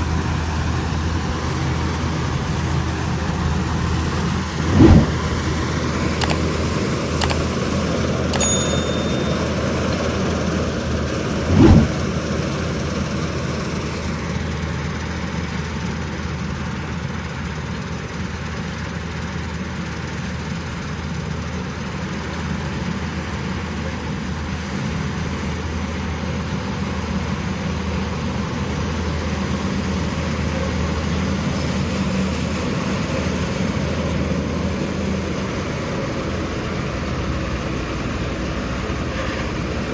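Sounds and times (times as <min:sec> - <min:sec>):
harvester engine droning: 0:00.0 - 0:15.1
loud thump: 0:04.6 - 0:05.2, 0:11.5 - 0:12.0.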